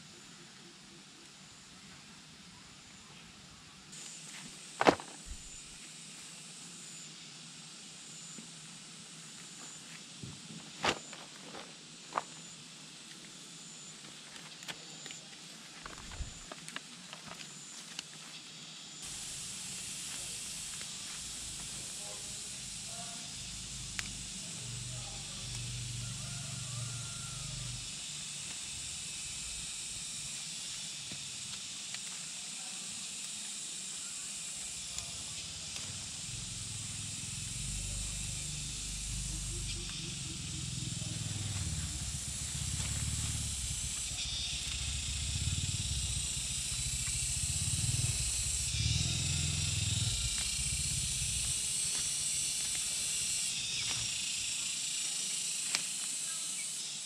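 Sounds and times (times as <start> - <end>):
high-pitched hiss: 0.0 - 57.0
uneven low rumbling: 37.4 - 51.6.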